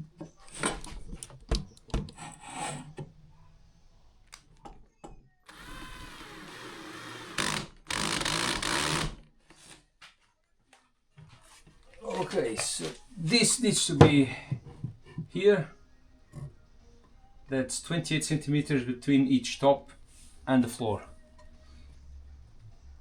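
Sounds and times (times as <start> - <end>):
handheld power tool working wood: 2.0 - 3.1, 5.5 - 9.2.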